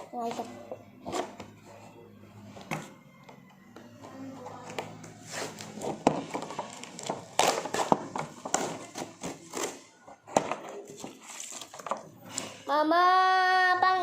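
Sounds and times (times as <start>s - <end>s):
plastic and cardboard rustling: 4.3s - 12.1s.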